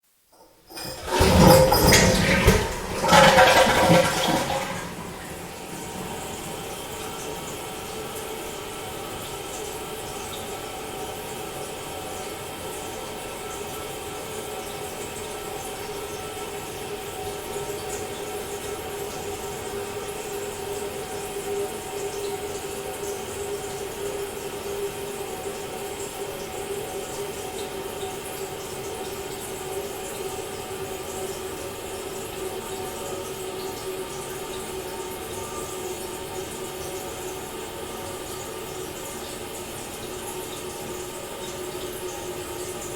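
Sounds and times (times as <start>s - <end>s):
cistern refilling: 0.4s - 9.0s
toilet flushing: 0.4s - 42.9s.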